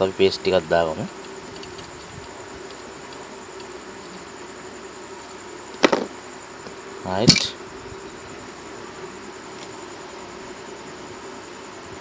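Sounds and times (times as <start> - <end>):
electronics droning hum: 0.0 - 12.0
even hiss: 0.0 - 12.0
sharp tool click: 7.3 - 7.5.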